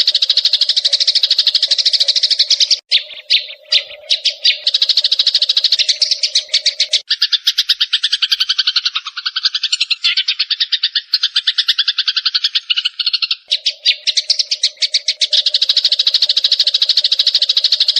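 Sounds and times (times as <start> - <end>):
sparrows chirping: 0.0 - 17.9.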